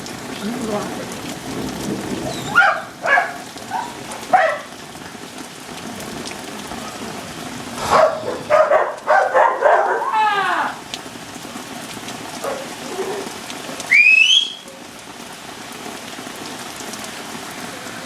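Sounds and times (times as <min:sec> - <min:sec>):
heavy rain hissing: 0:00.0 - 0:18.0
dogs barking: 0:02.2 - 0:04.8, 0:07.8 - 0:10.2, 0:12.3 - 0:13.4.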